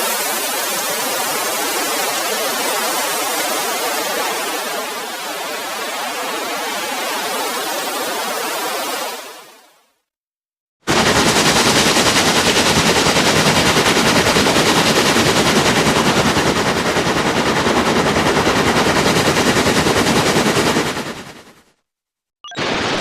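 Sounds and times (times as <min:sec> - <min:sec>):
harsh rattling noise: 0:10.9 - 0:21.6.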